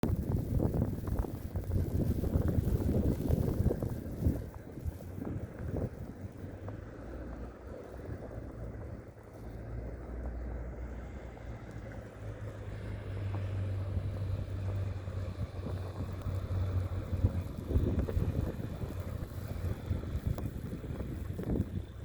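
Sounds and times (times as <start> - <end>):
blizzard wind on microphone: 0.0 - 22.0.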